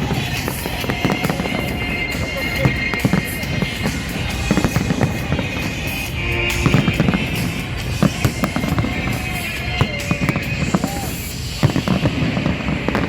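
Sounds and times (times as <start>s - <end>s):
fireworks banging and crackling: 0.0s - 13.0s
music playing: 0.0s - 13.0s.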